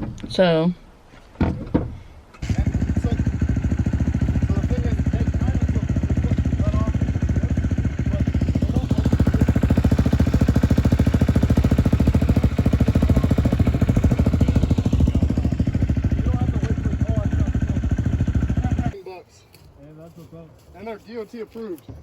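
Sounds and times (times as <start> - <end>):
small engine idling: 2.4 - 19.0.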